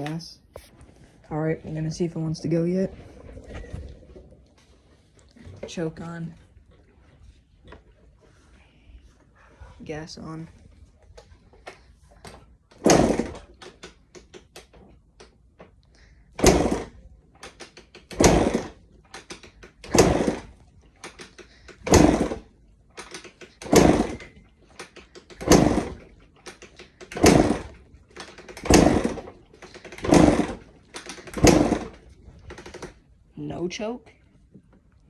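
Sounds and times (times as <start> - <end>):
motorbike being kick-started: 12.8 - 14.9, 16.4 - 33.0.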